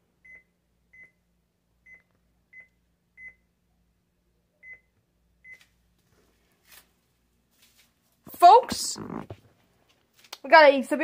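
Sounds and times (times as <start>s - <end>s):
faint electronic beeps: 4.5s - 5.6s
rustling: 5.6s - 8.2s.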